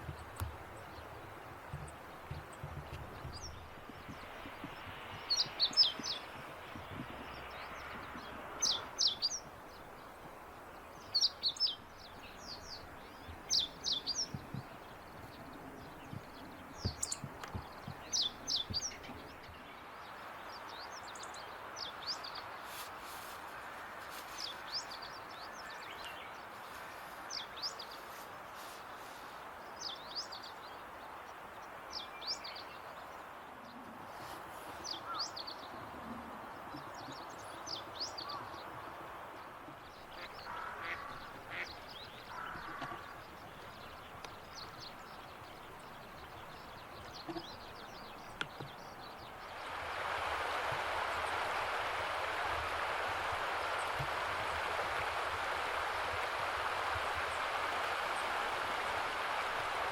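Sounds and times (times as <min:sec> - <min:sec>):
small birds chirping: 0:00.0 - 0:35.8, 0:39.8 - 0:49.8
steady background hiss: 0:00.0 - 0:59.9.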